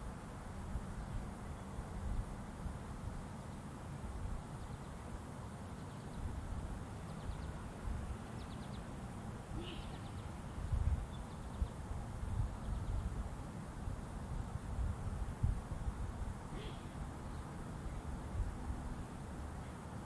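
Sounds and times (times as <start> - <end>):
faint bird chirps: 9.5 - 10.4.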